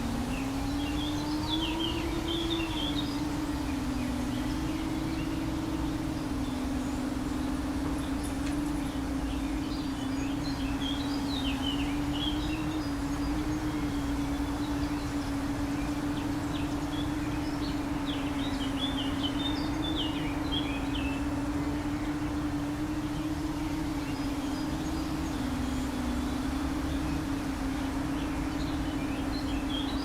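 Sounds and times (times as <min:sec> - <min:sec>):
birds chirping: 0:00.0 - 0:30.0
drone propellers buzzing: 0:00.0 - 0:30.0.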